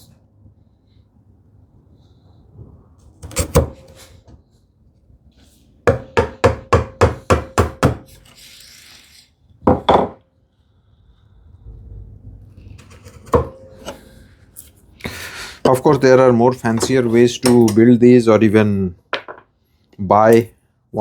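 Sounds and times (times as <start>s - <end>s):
hand tool knocking on wood: 5.9s - 8.0s.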